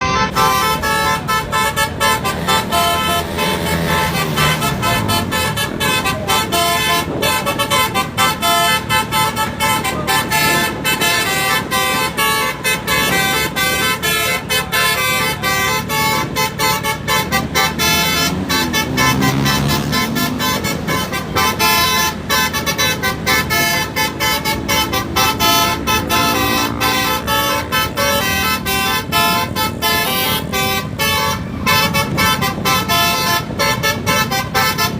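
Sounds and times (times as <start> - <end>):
multi-tone bus horn tune: 0.0 - 34.9.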